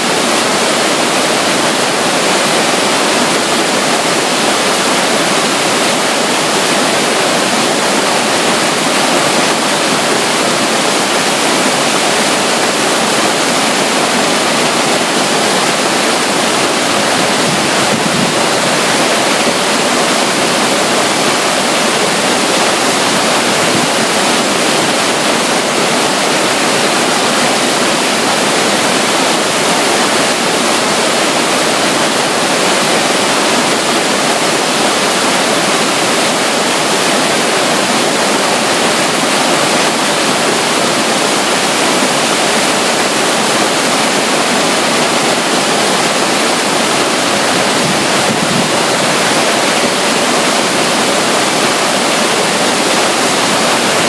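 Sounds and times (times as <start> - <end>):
running water rushing: 0.0 - 54.0.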